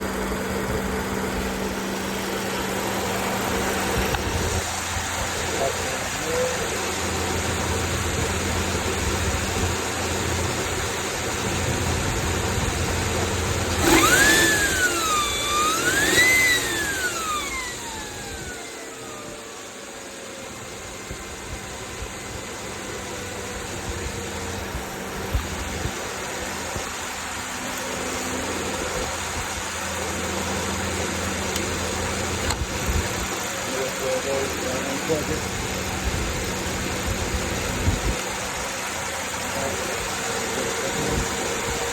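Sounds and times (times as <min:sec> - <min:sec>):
car engine revving: 0:00.0 - 0:19.2
alternator whine: 0:00.0 - 0:41.9.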